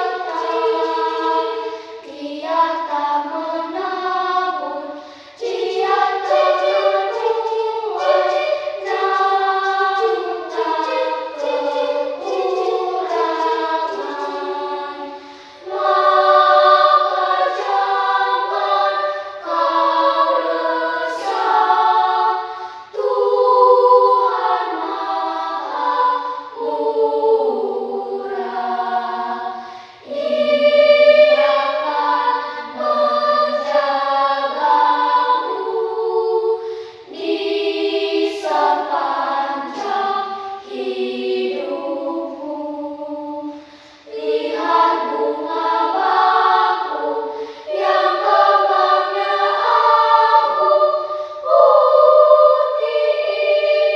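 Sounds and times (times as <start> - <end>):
choir singing a hymn: 0.0 - 53.9.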